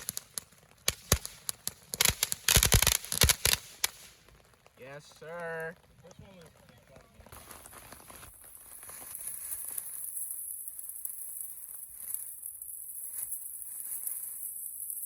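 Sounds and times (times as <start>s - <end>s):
firework fountain hissing: 0.0s - 4.3s, 7.3s - 15.0s
firework crackles: 0.0s - 15.0s.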